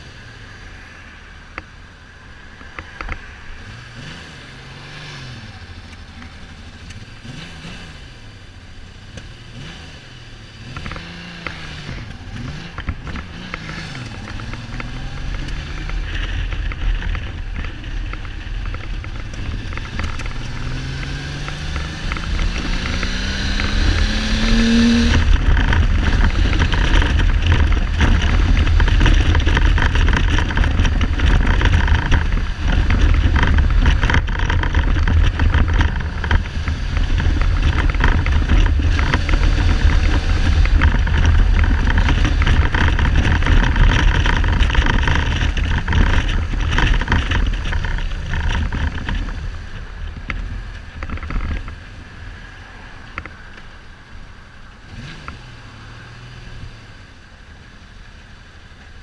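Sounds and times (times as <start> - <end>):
motorcycle engine accelerating: 2.5 - 58.0
wind buffeting on microphone: 11.8 - 51.9.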